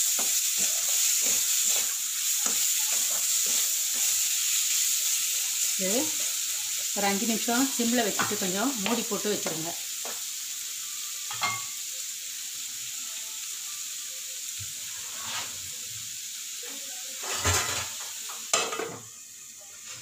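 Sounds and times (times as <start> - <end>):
masala sizzling in a pan: 0.0 - 20.0
spoon clinking against pan: 11.3 - 11.8.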